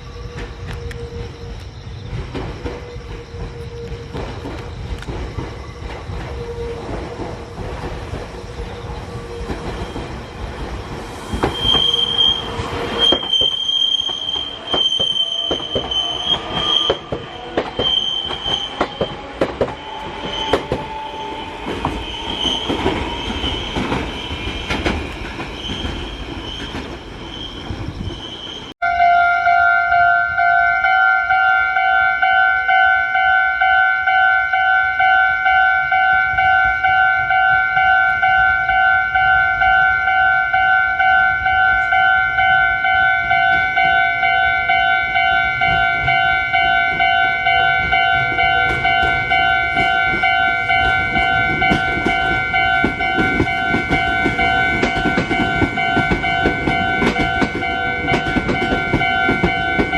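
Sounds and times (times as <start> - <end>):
train rumble: 0.0 - 59.9
train wheels clacking: 0.2 - 28.7, 41.0 - 59.9
two-tone crossing bell: 28.8 - 59.9.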